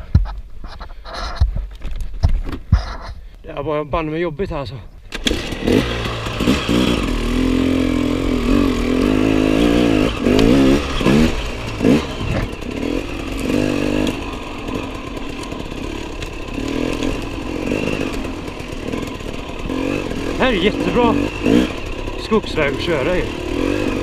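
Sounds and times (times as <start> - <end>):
dirt bike engine revving: 5.1 - 24.0.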